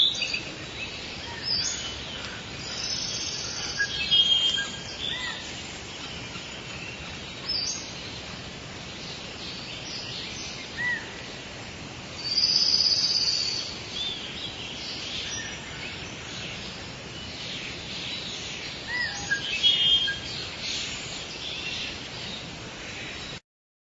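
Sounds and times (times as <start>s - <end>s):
steady hiss: 0.0s - 23.4s.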